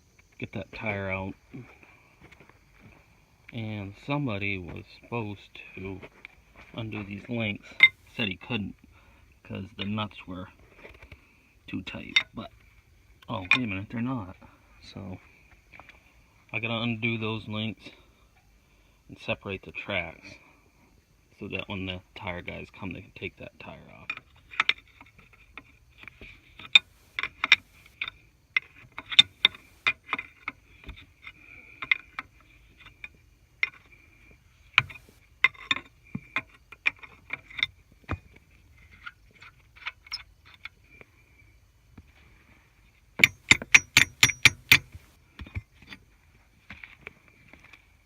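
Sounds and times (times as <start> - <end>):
hand tools clinking on metal: 7.6 - 8.2, 43.2 - 45.1.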